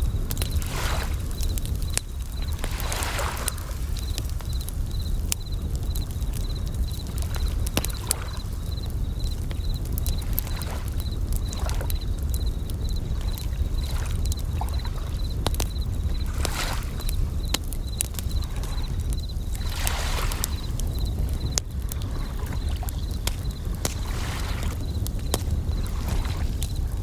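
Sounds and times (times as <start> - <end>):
campfire crackling and popping: 0.0 - 27.0
crickets chirping: 0.0 - 27.0
waves washing: 0.1 - 12.0, 17.8 - 21.0, 21.9 - 27.0.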